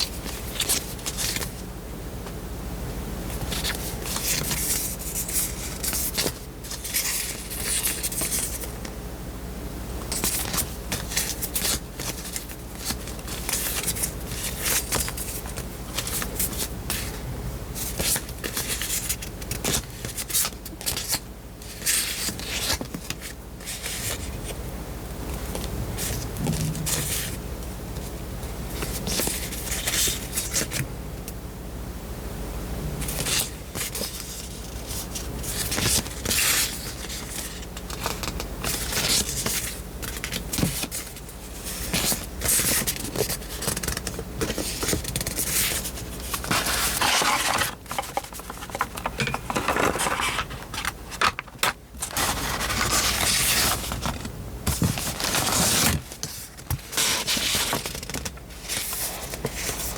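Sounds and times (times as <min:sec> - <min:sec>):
paper and plastic rustling: 0:10.1 - 0:17.2, 0:17.8 - 0:24.6, 0:33.1 - 0:59.9.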